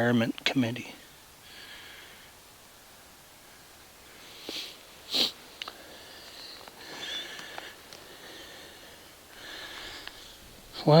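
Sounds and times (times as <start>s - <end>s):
person sniffing: 4.3s - 7.6s
faint clicks: 5.6s - 8.1s.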